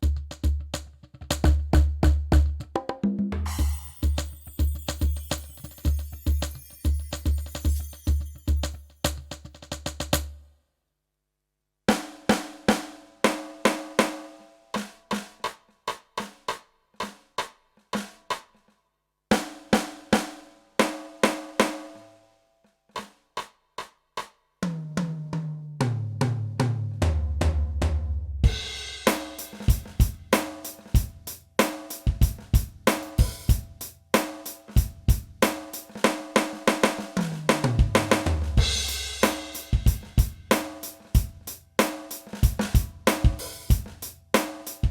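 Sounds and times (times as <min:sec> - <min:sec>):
cymbals and hi-hat: 0:03.4 - 0:09.4, 0:28.4 - 0:44.9
electronic drum grooves: 0:03.5 - 0:09.3, 0:28.5 - 0:44.9.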